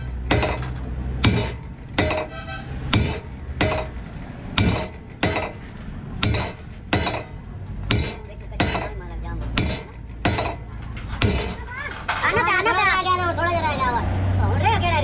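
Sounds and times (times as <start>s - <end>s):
hammer striking steel: 0.0s - 11.8s.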